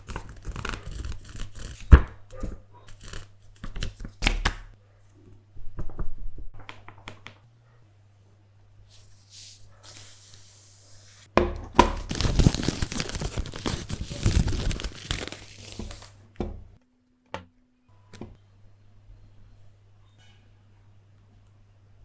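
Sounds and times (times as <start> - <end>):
packaging tearing and crinkling: 11.8 - 16.2.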